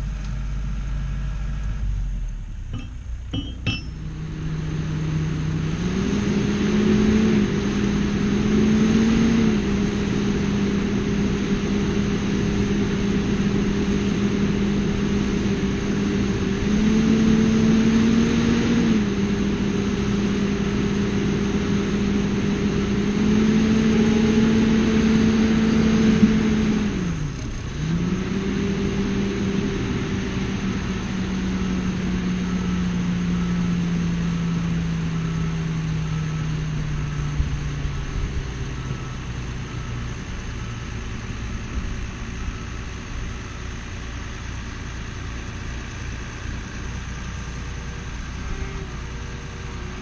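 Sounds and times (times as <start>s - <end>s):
engine revving: 4.2s - 42.5s.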